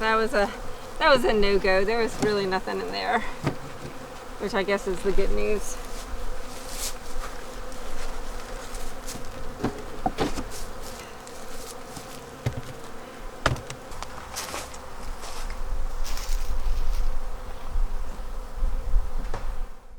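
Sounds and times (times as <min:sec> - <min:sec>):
bees buzzing: 0:00.0 - 0:19.9
hive equipment knocking: 0:01.2 - 0:04.3, 0:07.3 - 0:14.1.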